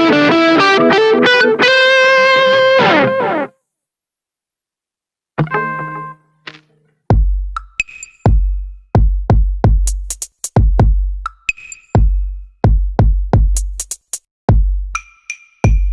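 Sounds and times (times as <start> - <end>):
booming kick drums: 7.1 - 7.6, 8.3 - 10.0, 10.6 - 11.1, 12.0 - 13.6, 14.5 - 14.9.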